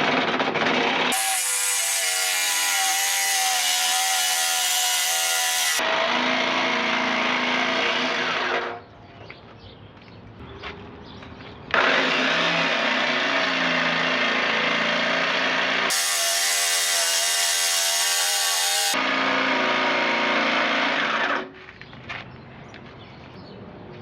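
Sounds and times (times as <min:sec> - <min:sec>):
jigsaw cutting thin steel: 0:00.1 - 0:08.7, 0:11.7 - 0:21.5.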